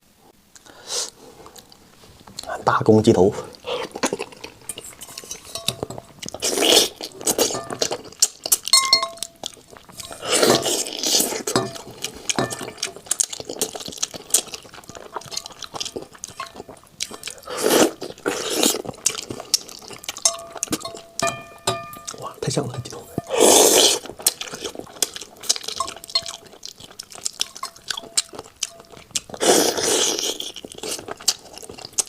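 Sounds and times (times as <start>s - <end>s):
handling and eating noise: 0.3s - 32.0s
utensils clinking against a dish: 4.7s - 6.2s, 7.2s - 10.8s, 11.4s - 13.0s, 14.9s - 17.6s, 19.8s - 23.5s, 25.5s - 26.6s, 27.3s - 29.1s.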